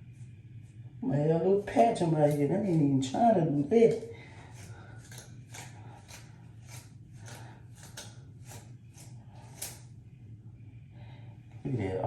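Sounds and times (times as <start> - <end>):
steady low hum: 0.0 - 12.0
scissors cutting hair: 1.8 - 9.9.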